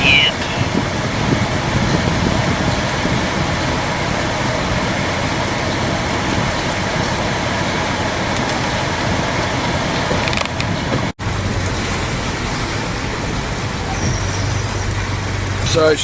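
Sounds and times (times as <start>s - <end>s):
heavy rain: 0.0s - 16.0s
van engine running: 0.0s - 16.0s
vehicle driving through water: 0.0s - 16.0s.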